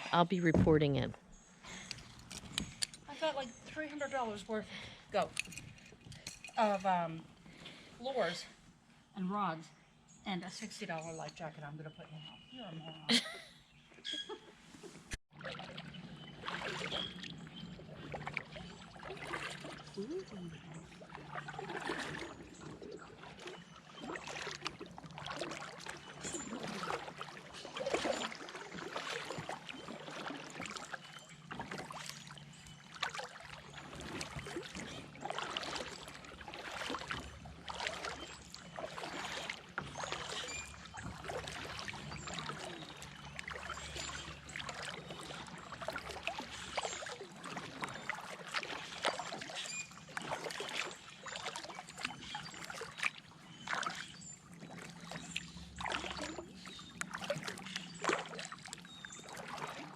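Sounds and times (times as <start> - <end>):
paddle strokes in water: 14.6 - 59.9.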